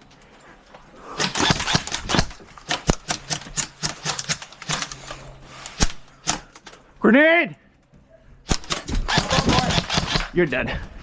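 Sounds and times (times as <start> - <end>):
airsoft guns firing: 1.2 - 4.8, 8.5 - 10.4.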